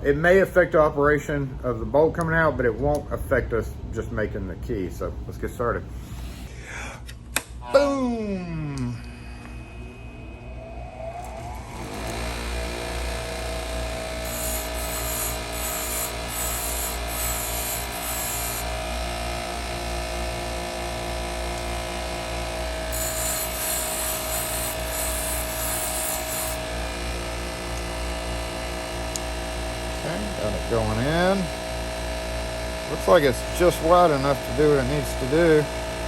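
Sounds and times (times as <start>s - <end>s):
electric grinder whining: 11.2s - 36.0s
harsh grinding of metal: 22.6s - 27.0s.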